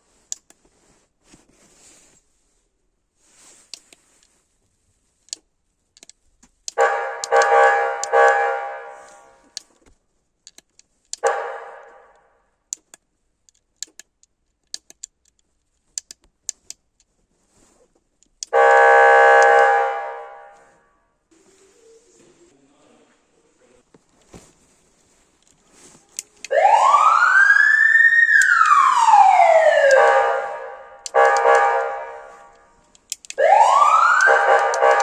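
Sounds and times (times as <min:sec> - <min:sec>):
fire engine horn blasts: 0:06.8 - 0:09.5, 0:11.2 - 0:12.2, 0:18.5 - 0:20.9, 0:26.5 - 0:27.8, 0:28.4 - 0:32.8, 0:33.4 - 0:35.0
sharp clicks: 0:12.7 - 0:17.1, 0:27.5 - 0:30.1, 0:31.0 - 0:35.0.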